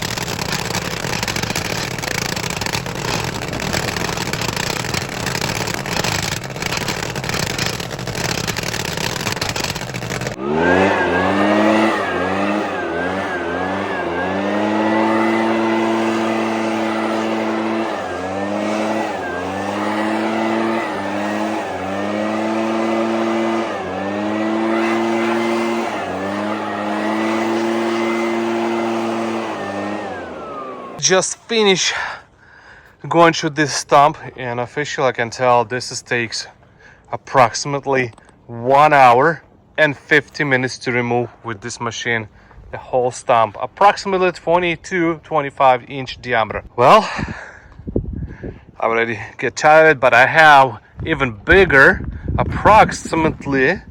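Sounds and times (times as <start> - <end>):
engine running under load: 0.0 - 32.1
stump grinder grinding wood: 0.0 - 32.2, 48.4 - 53.9.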